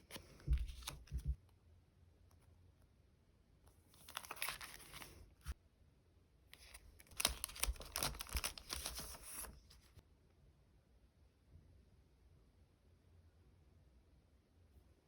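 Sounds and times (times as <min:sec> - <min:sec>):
plastic packaging rustling and peeling: 0:04.0 - 0:05.6, 0:06.6 - 0:09.9.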